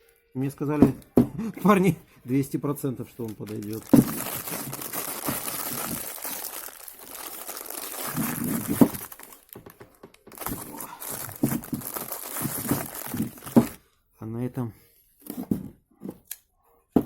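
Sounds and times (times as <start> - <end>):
crinkling and rustling: 2.8 - 13.8.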